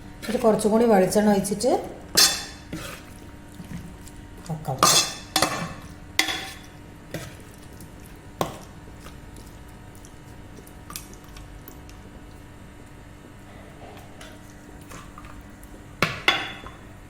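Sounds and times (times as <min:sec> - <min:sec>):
metal pan and spoon clanking: 0:02.1 - 0:02.6, 0:04.8 - 0:06.6.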